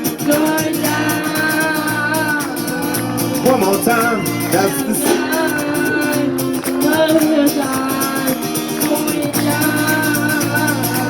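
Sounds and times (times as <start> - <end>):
band playing pop-reggae: 0.0 - 11.0
voices singing: 0.0 - 11.0
bass line: 0.9 - 8.1.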